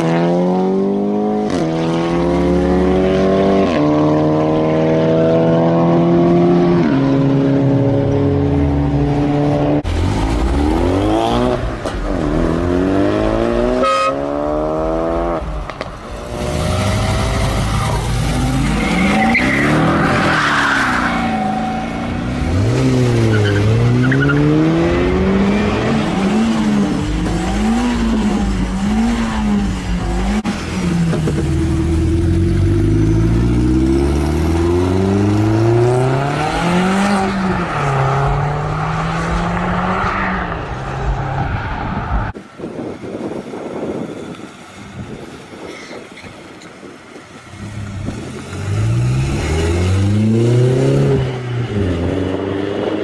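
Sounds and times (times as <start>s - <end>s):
car engine revving hard: 9.2s - 15.6s, 16.2s - 41.4s, 47.6s - 53.0s.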